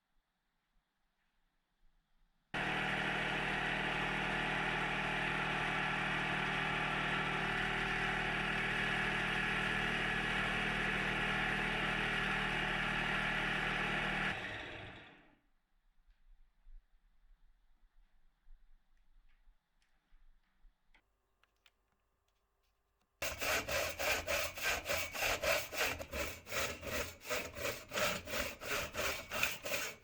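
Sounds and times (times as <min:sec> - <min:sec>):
lathe running and winding down: 0:02.6 - 0:15.2, 0:23.2 - 0:30.0.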